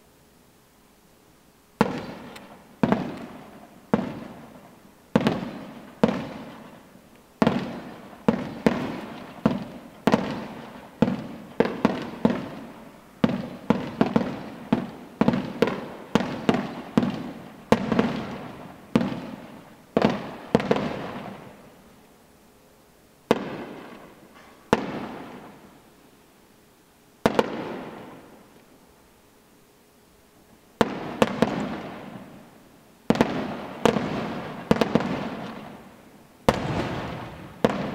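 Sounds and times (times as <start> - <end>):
fireworks bangs with echo: 1.8 - 21.8, 23.3 - 25.8, 27.2 - 28.5, 30.8 - 37.9.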